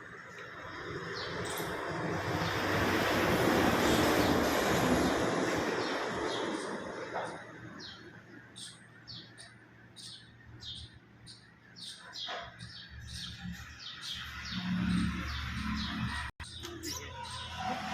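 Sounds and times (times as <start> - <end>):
small bird chirping: 5.8 - 17.5.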